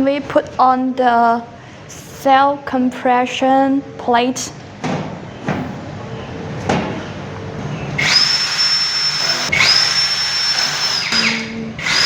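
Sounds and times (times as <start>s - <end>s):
power drill whining: 8.0s - 12.0s.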